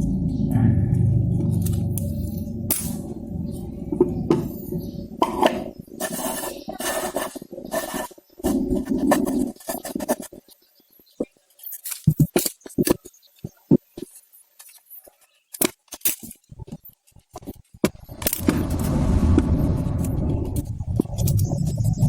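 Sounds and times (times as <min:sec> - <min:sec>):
small engine rumbling: 0:00.0 - 0:06.0, 0:17.9 - 0:22.0.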